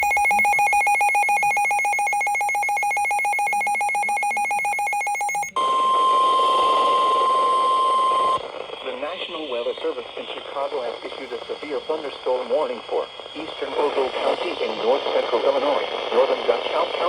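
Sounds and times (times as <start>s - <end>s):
pulsing electronic alarm tone: 0.0s - 8.4s
steady high warning tone: 0.0s - 15.6s.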